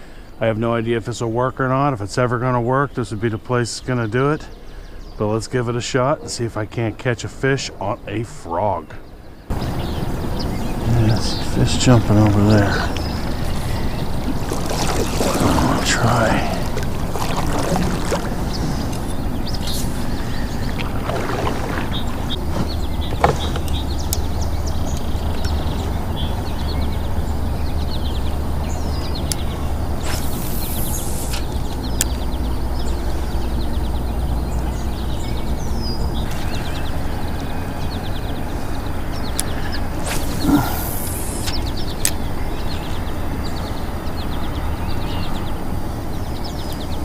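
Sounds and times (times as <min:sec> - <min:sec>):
birds chirping: 0:00.0 - 0:47.0
steady low rumble: 0:00.0 - 0:47.0
sharp clicks: 0:29.0 - 0:32.3, 0:39.2 - 0:42.3.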